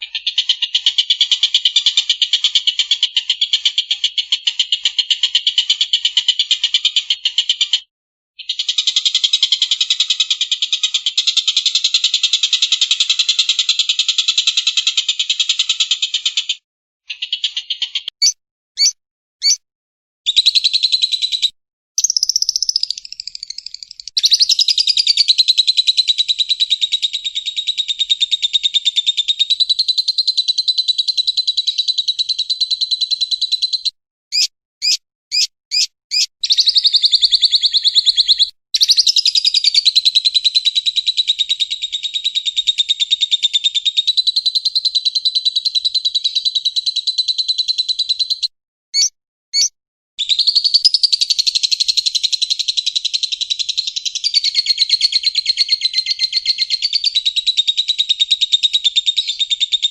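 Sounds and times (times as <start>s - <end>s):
lovebird chirping and trilling: 17.1s - 19.6s, 20.3s - 59.9s.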